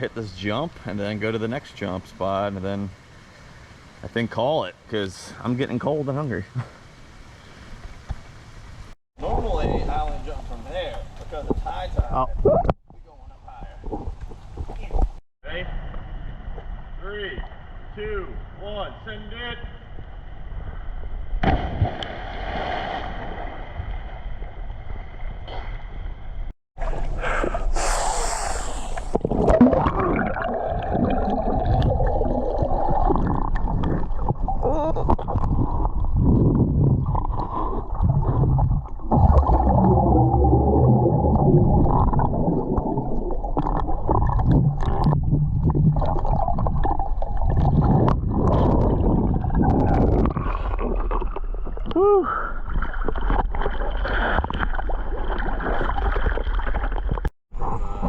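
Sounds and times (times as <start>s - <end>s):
muffled river water gurgling: 23.1s - 58.0s
hissing splash: 27.6s - 31.0s.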